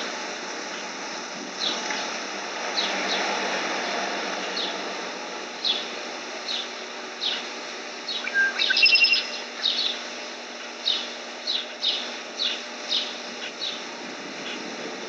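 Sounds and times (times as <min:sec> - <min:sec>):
outdoor background hiss: 0:00.0 - 0:15.0
small birds chirping: 0:08.1 - 0:13.8.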